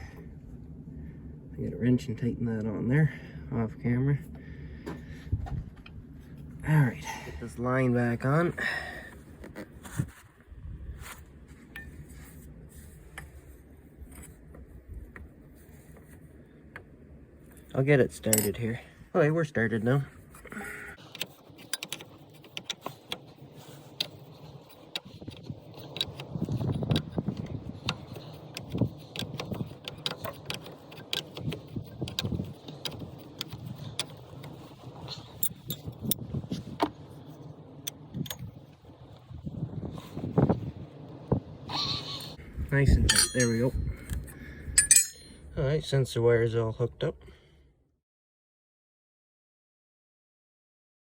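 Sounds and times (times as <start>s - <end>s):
metallic clinks and scrapes: 18.2s - 18.7s, 35.1s - 36.2s, 43.0s - 43.9s, 44.8s - 45.4s.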